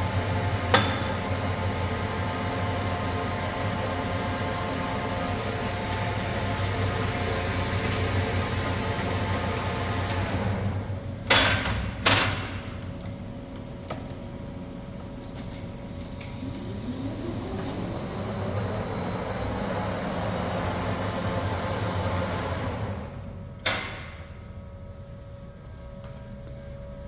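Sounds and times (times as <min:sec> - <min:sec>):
lathe motor humming: 0:00.0 - 0:11.2, 0:15.7 - 0:23.4.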